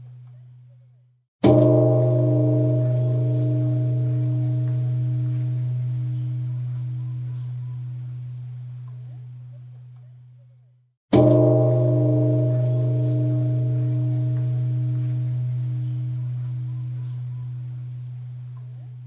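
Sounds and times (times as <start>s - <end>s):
temple bell ringing: 1.4s - 8.7s, 11.1s - 19.0s.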